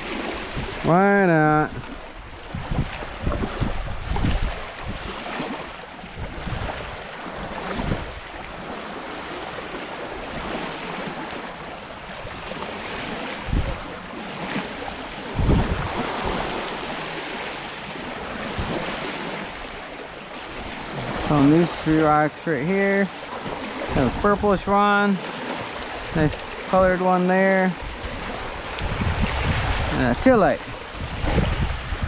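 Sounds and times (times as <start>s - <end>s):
wind buffeting microphone: 0.0s - 8.8s, 12.0s - 19.8s, 23.4s - 27.0s, 27.8s - 32.0s
waves washing on rocky shore: 0.0s - 32.0s.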